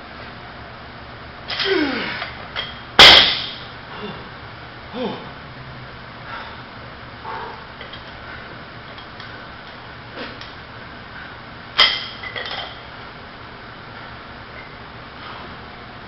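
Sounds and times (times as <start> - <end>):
hard metal clank: 2.6 - 3.7, 11.8 - 12.8.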